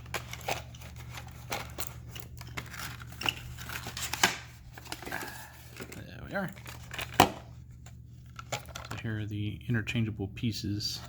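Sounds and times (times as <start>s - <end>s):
plastic packaging crinkling: 0.0s - 7.5s, 8.2s - 9.1s.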